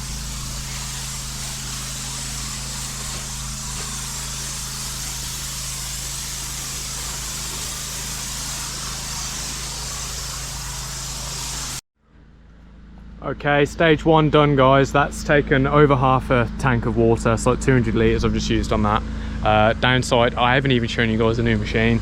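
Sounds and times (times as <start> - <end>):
pressure washer spraying water: 0.0 - 11.8.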